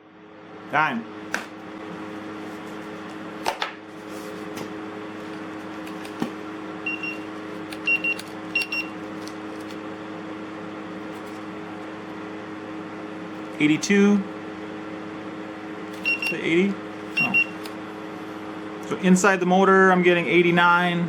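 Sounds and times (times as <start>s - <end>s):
steady hum with low tones: 0.0s - 21.0s
short high-pitched beeps: 6.9s - 7.2s, 17.2s - 17.6s.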